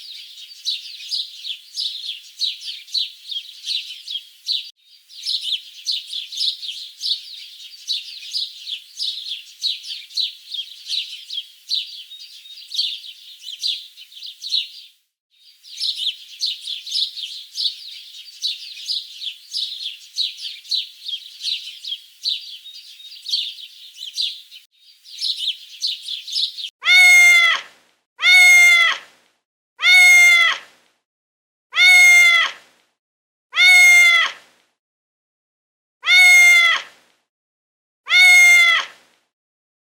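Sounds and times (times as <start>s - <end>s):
birds twittering: 0.0s - 26.7s
animal meowing call: 26.8s - 27.6s, 28.2s - 29.0s, 29.8s - 30.6s, 31.8s - 32.6s, 33.6s - 34.4s, 36.0s - 36.9s, 38.1s - 38.9s.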